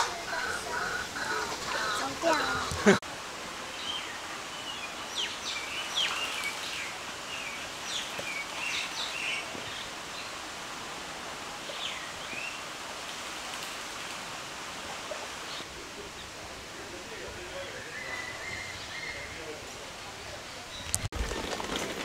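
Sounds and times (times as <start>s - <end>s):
birds chirping: 0.0s - 3.0s, 17.1s - 21.5s.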